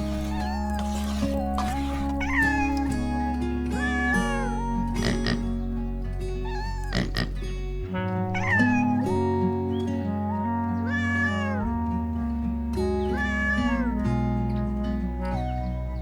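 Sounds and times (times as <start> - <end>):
cat meowing: 0.0 - 5.5, 6.4 - 7.4, 8.2 - 9.2, 10.8 - 12.3, 13.0 - 14.5
background music sustained notes: 0.0 - 16.0.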